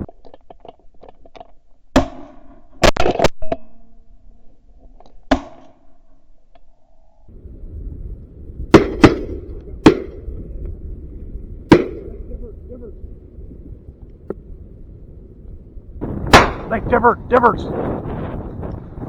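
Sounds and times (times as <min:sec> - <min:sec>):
wind rumble on microphone: 0:07.3 - 0:19.0
shotgun blasts: 0:08.7 - 0:10.3, 0:11.7 - 0:12.4, 0:16.0 - 0:17.6.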